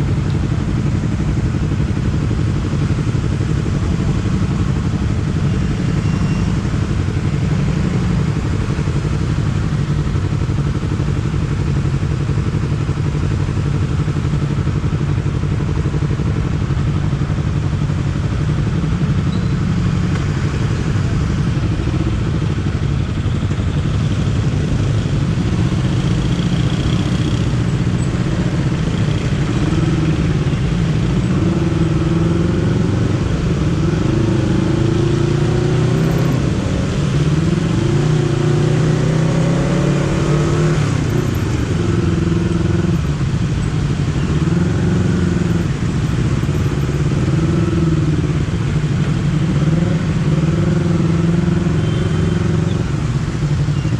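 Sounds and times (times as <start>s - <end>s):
motorcycle engine revving: 18.2s - 53.9s.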